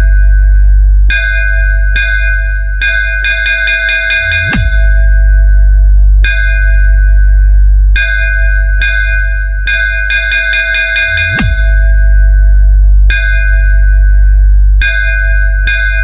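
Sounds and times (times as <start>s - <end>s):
heavy sub-bass: 0.0s - 16.0s
sharp hit: 11.2s - 12.0s.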